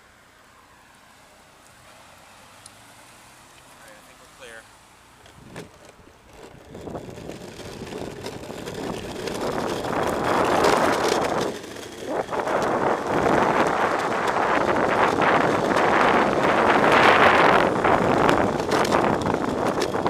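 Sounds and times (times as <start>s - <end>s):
skateboard wheels road noise: 0.0s - 20.0s
wind buffeting microphone: 5.2s - 20.0s.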